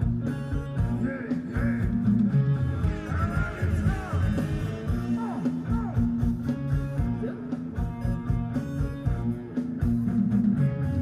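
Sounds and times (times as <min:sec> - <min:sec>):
guitar: 0:00.0 - 0:11.0
live band music: 0:00.0 - 0:11.0
steady drum beat: 0:00.0 - 0:11.0.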